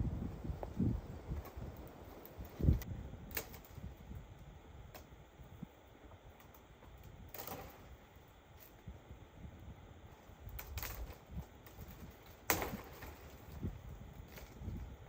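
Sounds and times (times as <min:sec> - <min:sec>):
sharp cracks and clicks: 0:02.8 - 0:03.8.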